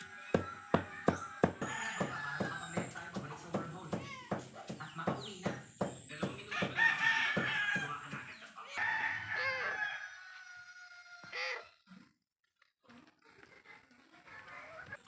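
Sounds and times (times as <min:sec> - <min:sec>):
rooster crowing: 0:00.0 - 0:03.1, 0:06.5 - 0:08.2, 0:08.8 - 0:11.7
sharp knocks: 0:00.4 - 0:08.2.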